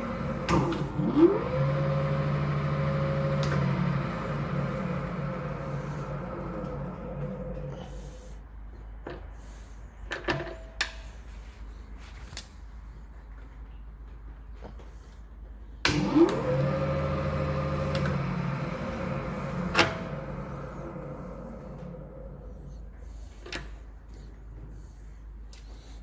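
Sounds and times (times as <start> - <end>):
lathe motor whine and hum: 0.0 - 7.7, 15.8 - 22.9
lathe control clicks: 3.2 - 4.1, 15.8 - 22.0.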